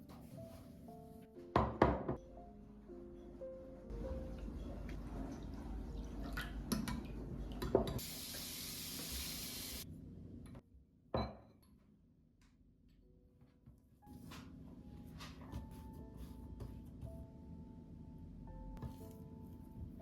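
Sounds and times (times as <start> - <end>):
water running in sink: 4.2 - 9.8
glass and dishes clinking: 11.2 - 11.6.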